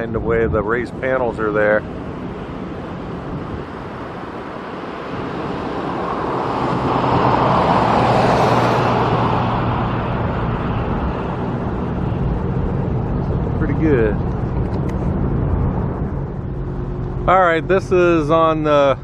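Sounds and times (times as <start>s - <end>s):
low engine hum: 0.0s - 19.0s
vehicle passing: 1.6s - 19.0s.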